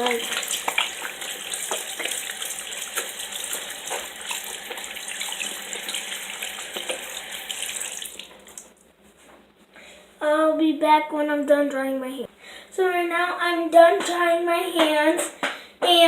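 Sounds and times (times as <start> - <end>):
hands washing with splashes: 0.0 - 8.7
tap water running into sink: 0.0 - 8.7.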